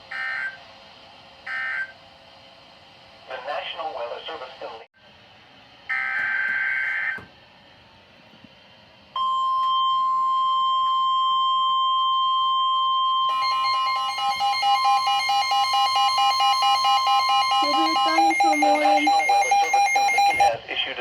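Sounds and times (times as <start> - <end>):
steady warning alarm tone: 0.1 - 0.6, 1.5 - 2.0, 9.2 - 20.6
rapidly pulsing alert tone: 13.3 - 20.6
warbling digital data tones: 13.3 - 20.6.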